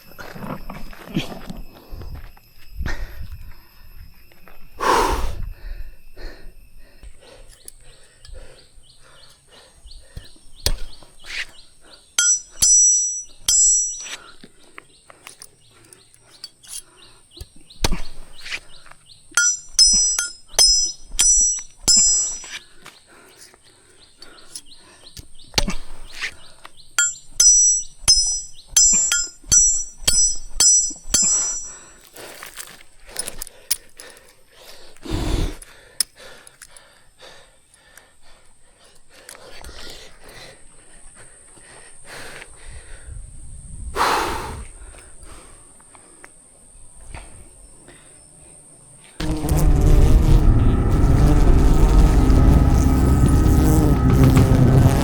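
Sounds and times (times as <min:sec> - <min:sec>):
bird chirping: 0:05.9 - 0:31.8
high thin insect-like tone: 0:19.3 - 0:22.7, 0:48.7 - 0:55.0.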